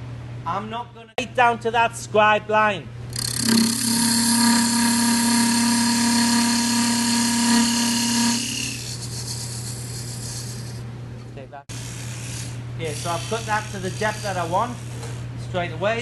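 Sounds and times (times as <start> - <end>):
lathe running hum: 3.1 - 10.8, 11.7 - 15.4
parting tool scraping spinning wood: 3.2 - 10.8.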